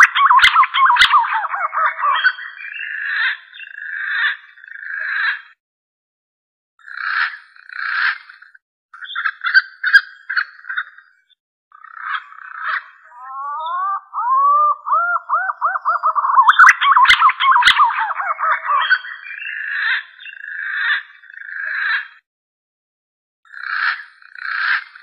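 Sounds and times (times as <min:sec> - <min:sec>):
whistled bird lure calls: 0:00.0 - 0:03.2, 0:13.1 - 0:20.4.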